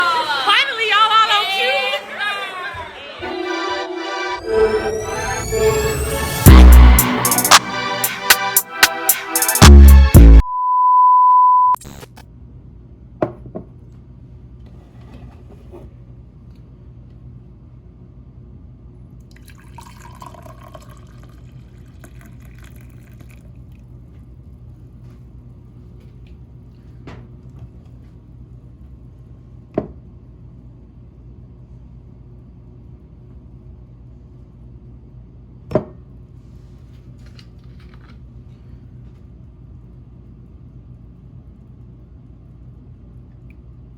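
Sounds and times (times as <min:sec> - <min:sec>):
electronic beep: 0:10.4 - 0:12.1.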